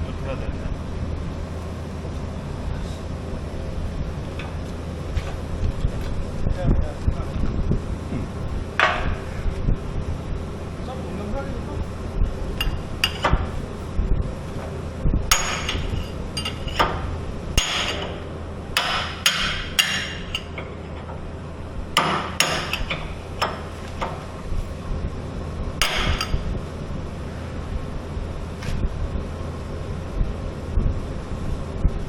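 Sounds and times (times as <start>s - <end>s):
hammer striking steel: 12.6s - 13.5s, 15.3s - 21.3s, 22.0s - 24.4s, 25.8s - 26.5s.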